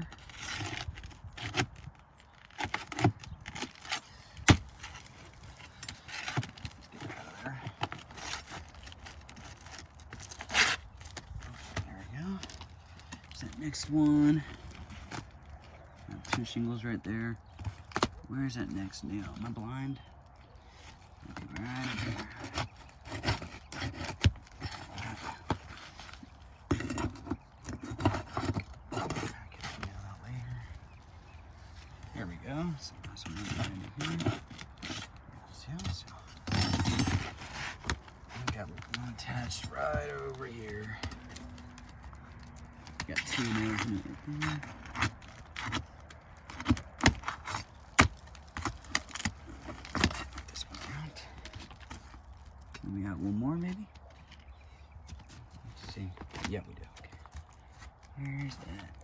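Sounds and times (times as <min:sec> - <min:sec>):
metal tool scraping shingles: 0:00.0 - 0:01.8, 0:02.4 - 0:15.3, 0:21.2 - 0:29.9, 0:32.3 - 0:52.1
metal tool clinking and scraping: 0:32.3 - 0:47.8.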